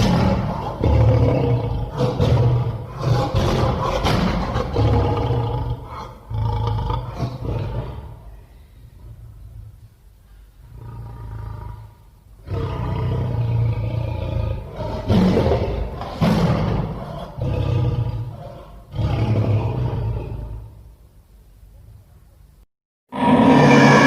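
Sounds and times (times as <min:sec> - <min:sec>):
big cat roaring and growling: 0:00.0 - 0:08.3, 0:10.8 - 0:20.7, 0:23.1 - 0:24.0.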